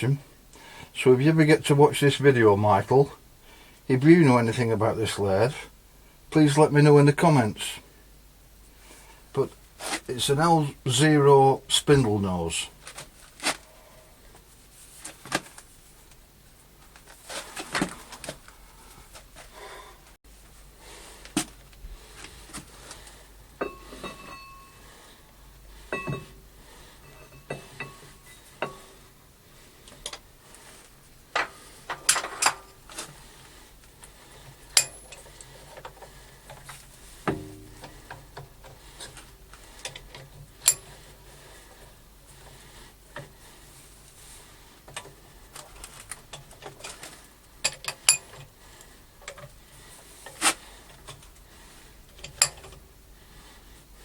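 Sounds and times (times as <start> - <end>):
metal tools clinking and knocking: 23.6 - 24.8, 25.9 - 26.4, 27.0 - 28.9, 31.4 - 32.8, 34.7 - 35.3, 40.6 - 40.9, 52.2 - 52.8.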